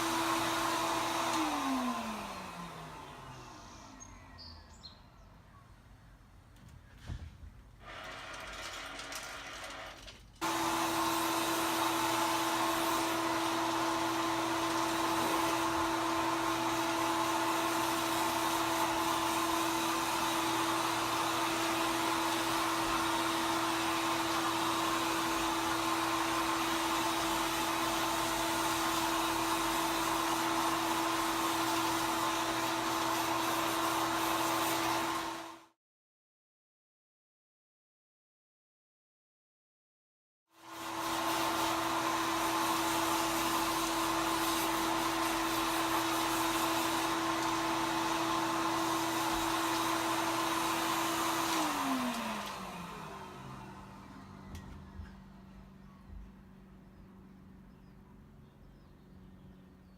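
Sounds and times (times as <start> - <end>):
hair dryer running: 0.0 - 4.0, 10.4 - 35.8, 40.6 - 55.0
quiet whir: 52.4 - 59.6.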